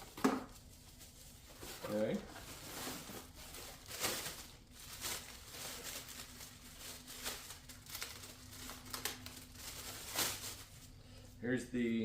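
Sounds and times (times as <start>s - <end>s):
packaging rustling: 0.0s - 11.0s.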